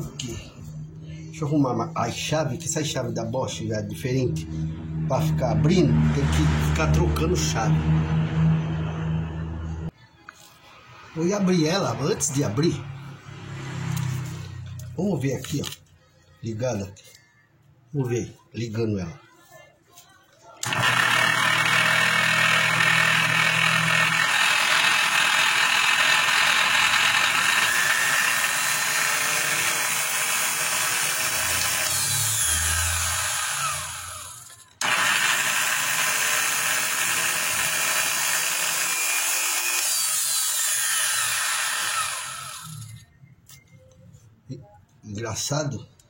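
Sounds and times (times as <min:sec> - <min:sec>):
angle grinder running: 0:20.6 - 0:43.0
grinder spinning down: 0:20.6 - 0:43.1.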